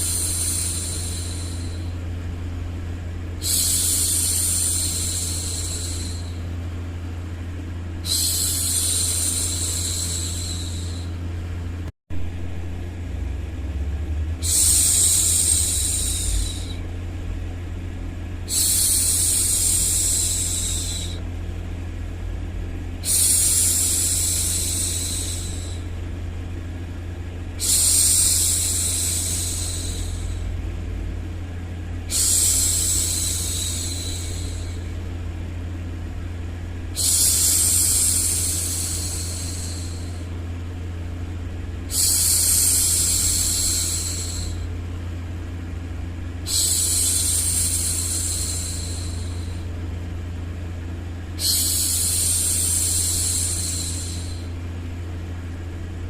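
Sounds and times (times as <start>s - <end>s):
low white noise hum: 0.0s - 56.0s
woman shushing: 3.4s - 6.4s, 8.0s - 11.2s, 14.4s - 16.8s, 18.5s - 21.2s, 32.1s - 35.0s, 36.9s - 40.3s, 41.9s - 44.6s, 46.5s - 49.7s, 51.4s - 54.6s.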